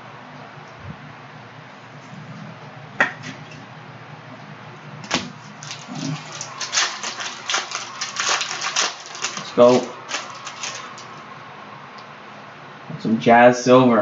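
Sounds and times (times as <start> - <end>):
card pack wrapper crinkling: 5.0 - 11.3.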